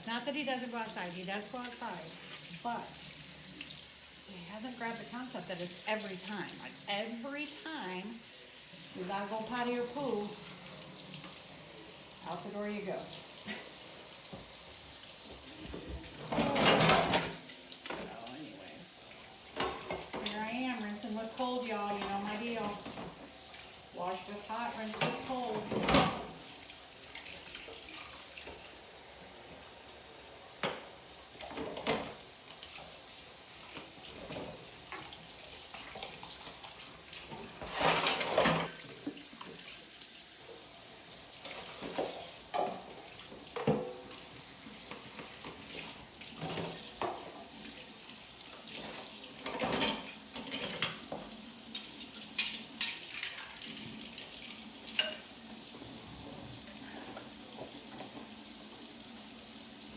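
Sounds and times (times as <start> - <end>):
water running from tap: 0.0 - 59.9
dishes and cutlery clinking: 15.6 - 18.2, 24.9 - 26.4, 37.3 - 39.1, 48.8 - 53.6, 54.4 - 55.4.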